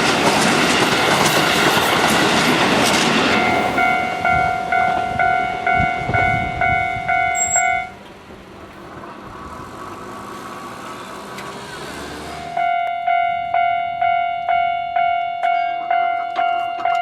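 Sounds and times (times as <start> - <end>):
passing train rumble: 0.0 - 17.0
level-crossing warning bell: 3.1 - 8.3, 12.4 - 17.0.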